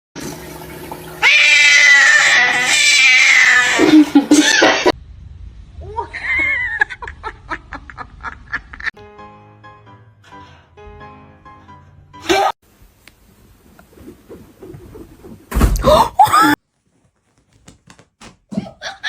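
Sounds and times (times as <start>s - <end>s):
cat crying: 1.2s - 4.9s
cat yowling: 1.2s - 4.9s.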